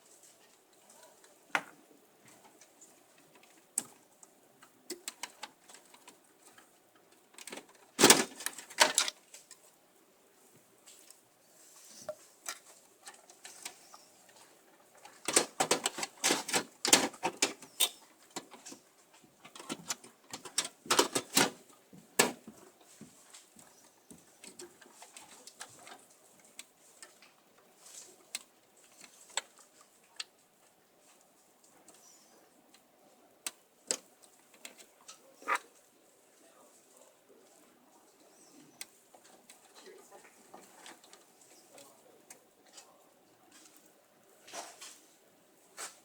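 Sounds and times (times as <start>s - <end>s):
plastic and metal parts clicking: 4.9s - 9.5s, 15.0s - 18.8s, 19.4s - 21.6s.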